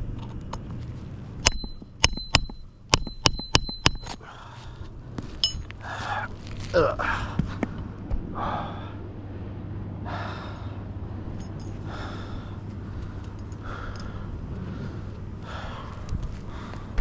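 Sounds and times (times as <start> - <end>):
steady low hum: 0.0 - 17.0
person breathing heavily: 4.2 - 5.1, 5.8 - 9.1, 10.0 - 17.0.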